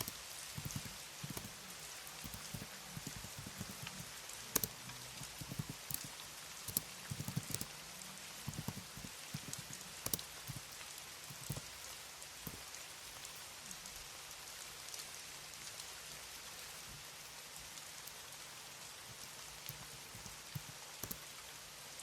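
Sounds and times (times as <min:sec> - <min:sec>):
keyboard key clicks: 0:00.0 - 0:13.4, 0:18.0 - 0:21.4
soft rain-like hiss: 0:00.0 - 0:22.0.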